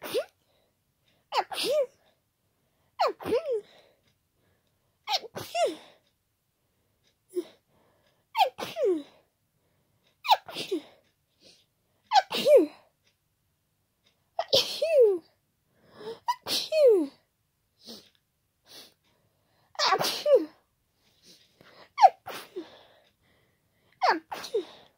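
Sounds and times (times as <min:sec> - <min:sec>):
faint breaths: 0:05.8 - 0:08.3, 0:15.6 - 0:16.3, 0:17.8 - 0:19.8, 0:21.0 - 0:24.0
person sneezing: 0:12.1 - 0:12.7, 0:16.0 - 0:17.1, 0:19.8 - 0:20.6, 0:22.0 - 0:22.8, 0:24.0 - 0:24.8.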